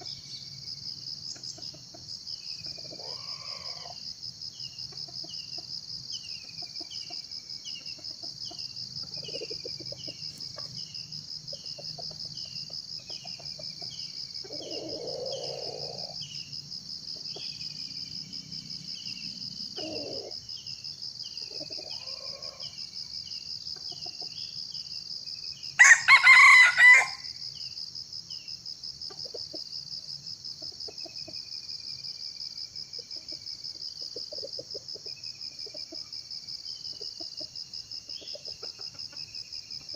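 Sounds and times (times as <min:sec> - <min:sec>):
small bird chirping: 0:00.0 - 0:16.6, 0:17.2 - 0:25.0, 0:36.7 - 0:39.9
pulsing high insect chorus: 0:00.0 - 0:39.9
junglefowl crowing: 0:02.7 - 0:04.0, 0:14.4 - 0:16.2, 0:19.8 - 0:20.4, 0:21.5 - 0:22.8, 0:25.8 - 0:27.4.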